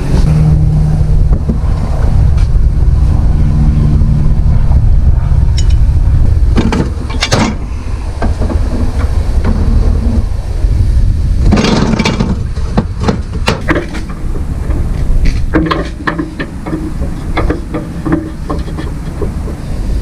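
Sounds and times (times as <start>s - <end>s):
wind on microphone: 0.0s - 20.0s
metal knocks and clatters: 6.5s - 7.6s, 11.4s - 19.7s.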